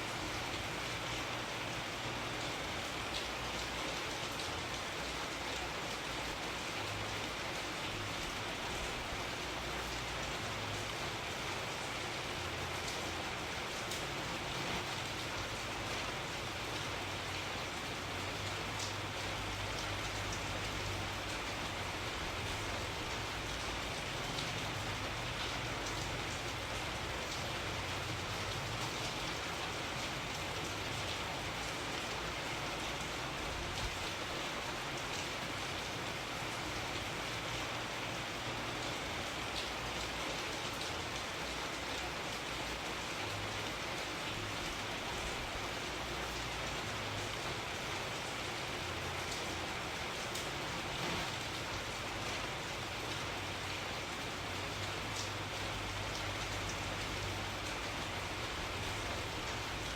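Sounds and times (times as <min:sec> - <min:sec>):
steady rain hiss: 0:00.0 - 0:59.9
rain drop ticks: 0:18.3 - 0:32.3, 0:54.7 - 0:59.9.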